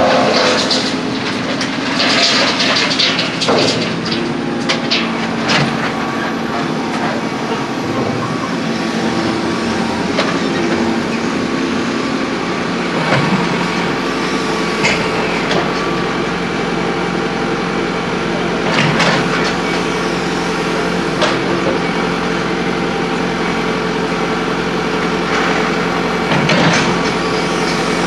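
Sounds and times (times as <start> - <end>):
engine running steadily: 0.0 - 28.0
knocks and clatters of roadwork: 0.0 - 28.0.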